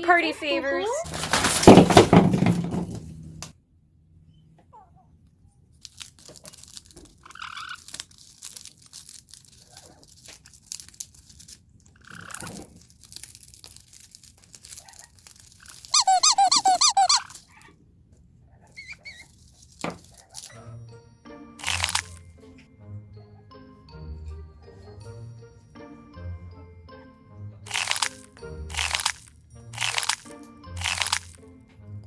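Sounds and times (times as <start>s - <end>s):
parrots chewing and crunching: 5.6s - 20.6s, 21.6s - 22.3s, 27.7s - 31.4s
high squeaks: 15.7s - 17.6s.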